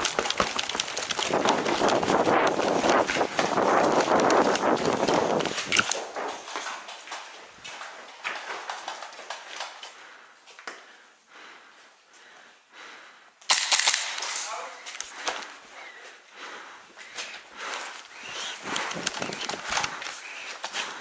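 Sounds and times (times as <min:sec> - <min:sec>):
gear rattling: 0:00.0 - 0:06.4, 0:17.7 - 0:21.0
footsteps: 0:00.0 - 0:10.8, 0:14.3 - 0:21.0.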